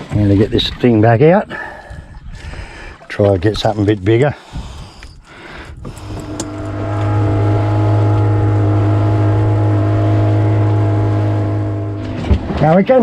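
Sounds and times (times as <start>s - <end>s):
outboard motor droning: 5.6s - 13.0s.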